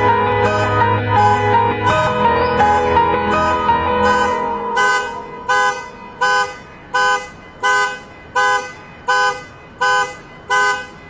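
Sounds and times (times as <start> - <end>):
car horn honking: 0.0 - 11.0.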